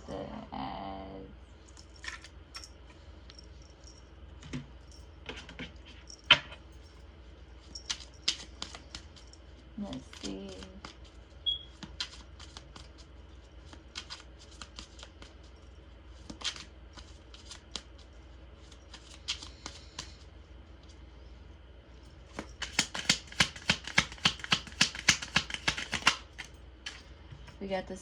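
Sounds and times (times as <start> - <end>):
cards being shuffled: 7.7 - 20.2, 22.3 - 27.1.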